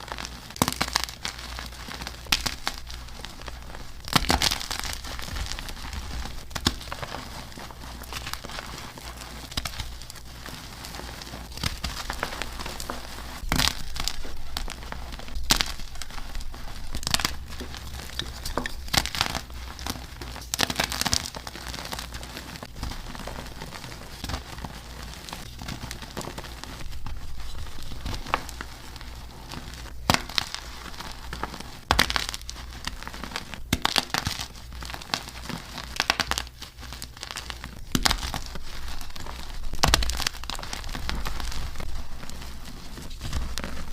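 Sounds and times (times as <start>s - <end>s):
chalk crunching: 0.0s - 43.9s
powdery crackling and crumbling: 0.0s - 43.9s
steady low hum: 1.2s - 33.7s.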